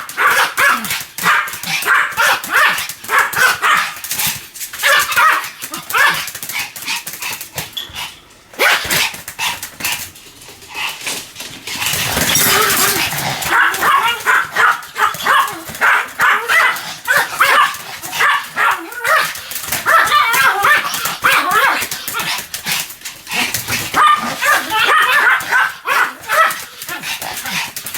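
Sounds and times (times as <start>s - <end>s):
small dog yapping: 0.0s - 4.0s, 4.8s - 6.3s, 8.6s - 9.1s, 12.0s - 22.4s, 23.3s - 27.6s.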